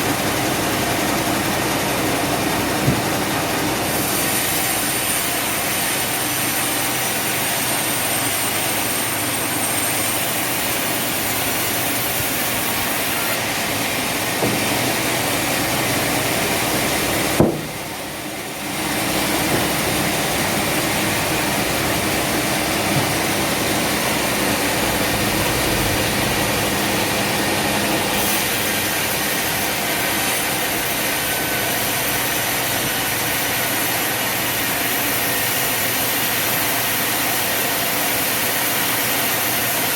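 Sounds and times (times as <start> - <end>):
sawmill machinery running: 0.0 - 39.9
sharp knock: 17.4 - 17.8.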